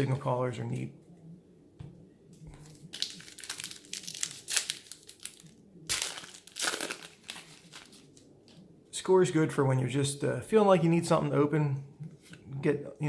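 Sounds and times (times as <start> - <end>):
plastic wrapper crinkling: 2.5 - 8.6.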